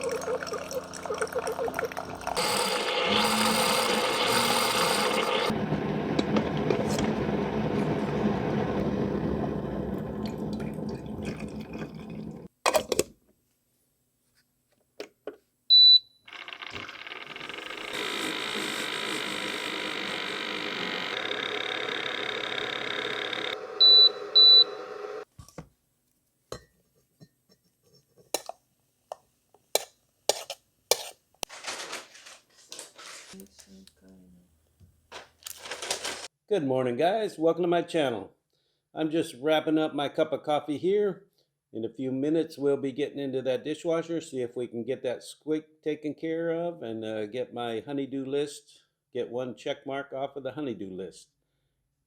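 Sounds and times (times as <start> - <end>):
coffee maker beeps: 0.0 - 10.9, 15.7 - 25.3
coffee maker pumping and brewing: 0.0 - 12.5, 16.3 - 25.3.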